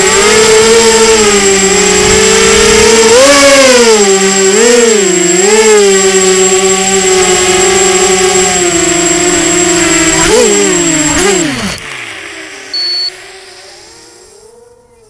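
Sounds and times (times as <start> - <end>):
quadcopter motors whining: 0.0 - 15.0
short high beep: 12.7 - 13.2.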